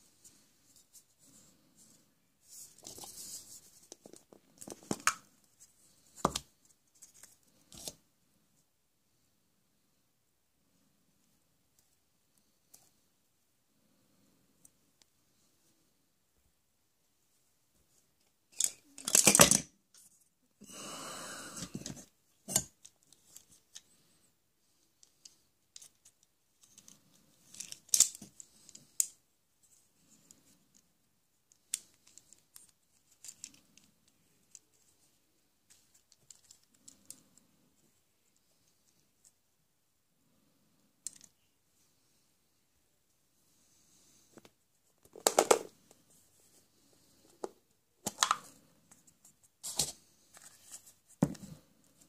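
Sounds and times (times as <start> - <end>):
plastic pieces clicking: 18.6 - 19.6, 25.8 - 29.1.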